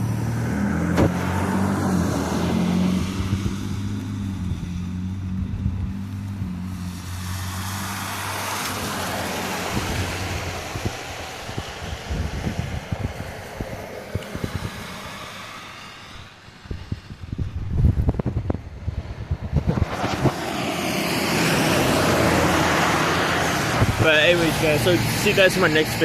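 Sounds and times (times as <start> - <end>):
car engine humming: 0.0 - 26.0
wet road noise: 0.0 - 26.0
hard rain hissing: 6.9 - 17.1, 20.2 - 26.0
wind knocks on microphone: 16.7 - 20.8, 23.7 - 24.2.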